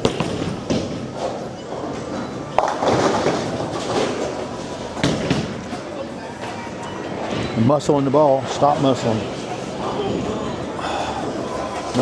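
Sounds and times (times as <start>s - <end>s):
bowling ball hitting pins: 2.6s - 4.3s.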